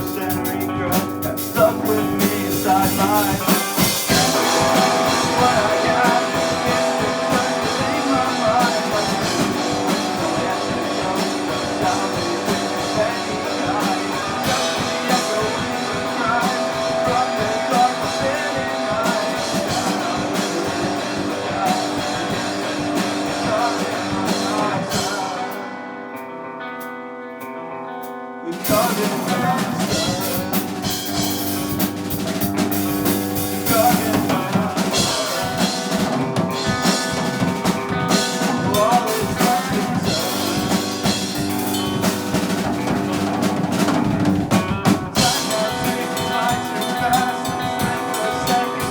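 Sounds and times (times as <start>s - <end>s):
person singing: 0.0s - 26.0s, 28.4s - 48.9s
drums: 0.0s - 48.9s
electric guitar: 0.0s - 48.9s.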